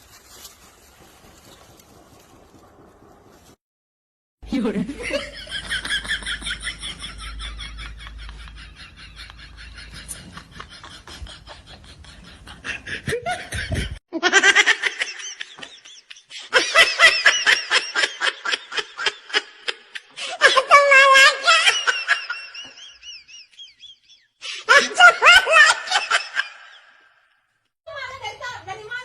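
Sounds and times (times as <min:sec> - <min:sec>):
people laughing hard: 0:04.8 - 0:27.0.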